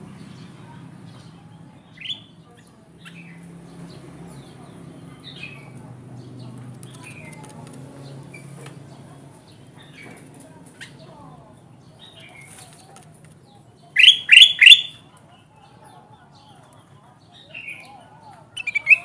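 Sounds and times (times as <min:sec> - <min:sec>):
bulbul chirping: 0:14.0 - 0:15.0.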